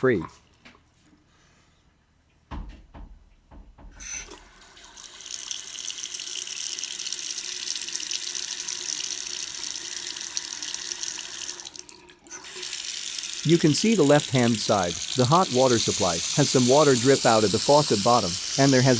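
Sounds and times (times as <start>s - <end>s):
water running into sink: 4.2s - 18.9s.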